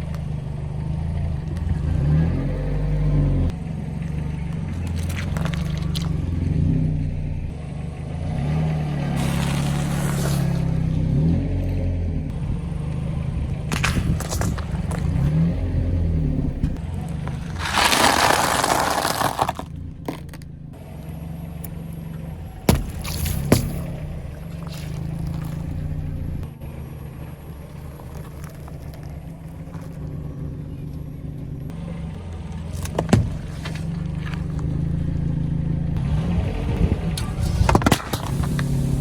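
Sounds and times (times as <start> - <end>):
car engine running: 0.0 - 39.0
tyres crushing objects: 4.7 - 6.2, 9.2 - 10.7, 13.5 - 16.1, 16.7 - 20.6, 22.4 - 26.3, 27.5 - 31.4, 32.4 - 35.0, 37.2 - 39.0.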